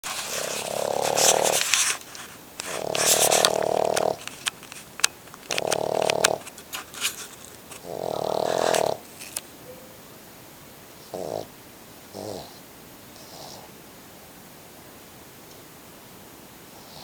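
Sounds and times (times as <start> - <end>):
dog snoring: 0.2 - 2.0, 2.6 - 4.4, 5.5 - 9.1, 11.0 - 11.5, 12.1 - 12.6, 13.2 - 13.7, 16.7 - 17.0.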